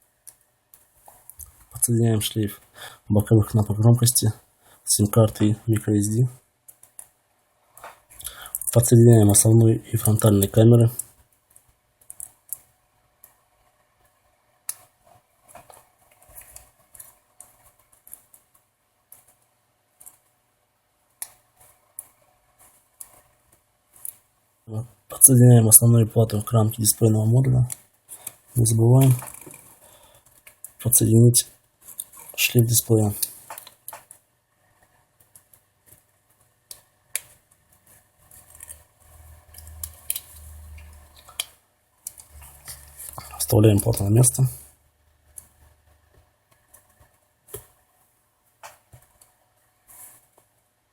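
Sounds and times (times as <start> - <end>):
small parts clicking and tapping: 10.0 - 13.4, 15.5 - 20.3, 35.1 - 43.9.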